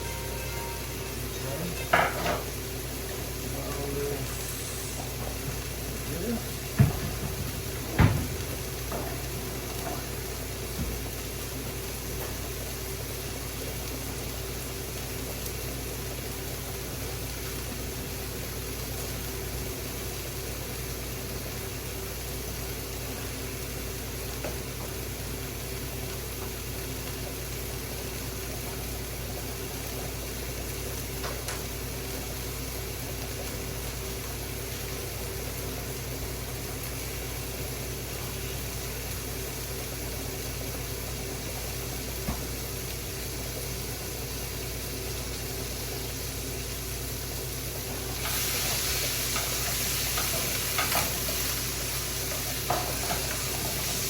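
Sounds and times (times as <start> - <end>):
faint held tone: 0.0 - 2.0
steady mechanical hum: 0.0 - 54.0.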